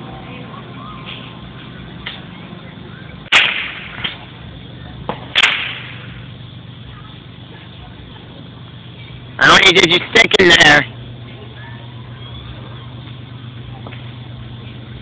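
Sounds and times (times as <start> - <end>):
firecracker bangs: 3.2 - 4.2, 5.1 - 6.3
small firecracker pops: 3.2 - 4.2, 5.0 - 6.2.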